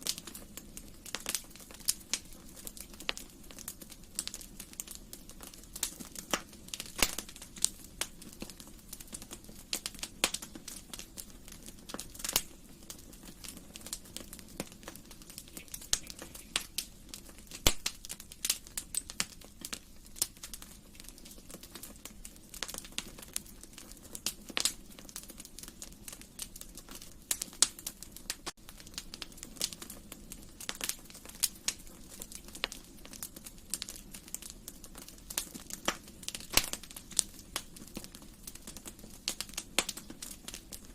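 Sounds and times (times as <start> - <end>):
flames hissing: 0.0 - 28.0
wood fire crackling: 0.0 - 40.9.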